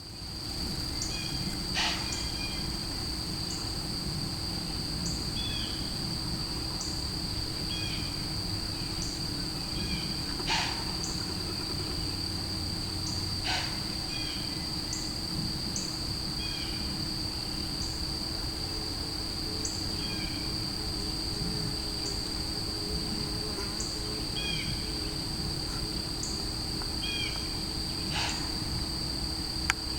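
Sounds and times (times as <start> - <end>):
insect trilling: 0.9 - 3.7, 5.0 - 5.9, 7.6 - 15.2, 15.8 - 18.0, 19.6 - 21.2, 23.1 - 29.9.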